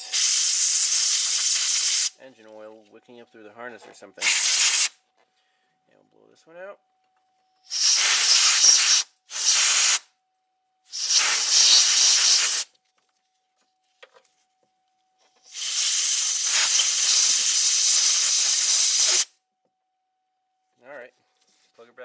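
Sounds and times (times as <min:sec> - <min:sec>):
compressed air blow gun hissing: 0:00.0 - 0:02.1, 0:04.2 - 0:04.9, 0:07.7 - 0:10.0, 0:10.9 - 0:12.7, 0:15.5 - 0:19.3.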